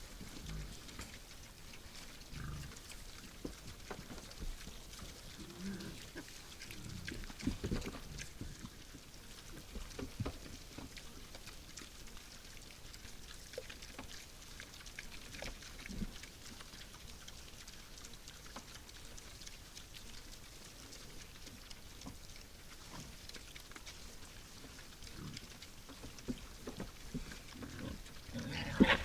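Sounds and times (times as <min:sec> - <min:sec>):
rustling and clicks of animals feeding: 0:00.0 - 0:29.0
wild boars grunting: 0:00.2 - 0:01.2, 0:02.2 - 0:03.1, 0:04.9 - 0:08.9, 0:25.1 - 0:25.5, 0:27.1 - 0:29.0.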